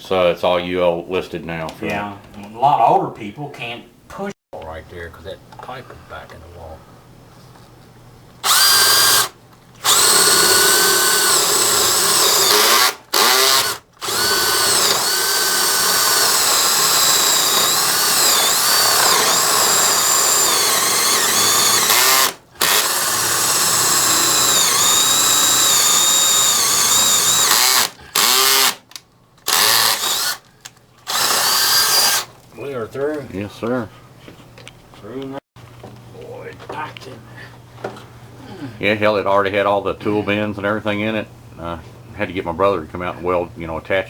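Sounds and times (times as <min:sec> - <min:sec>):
electric power drill boring: 0:08.4 - 0:28.8, 0:29.5 - 0:30.5, 0:31.1 - 0:32.3.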